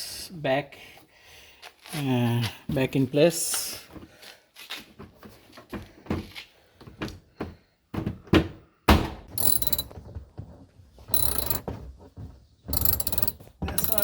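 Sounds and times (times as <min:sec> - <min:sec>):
ratchet wrench clicking: 0:09.4 - 0:09.9, 0:11.2 - 0:11.6, 0:12.7 - 0:14.0.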